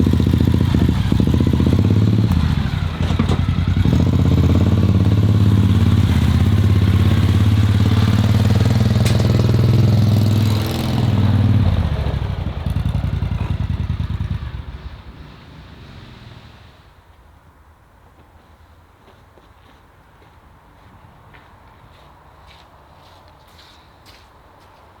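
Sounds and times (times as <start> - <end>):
engine running with low pulsing: 0.0 - 15.2.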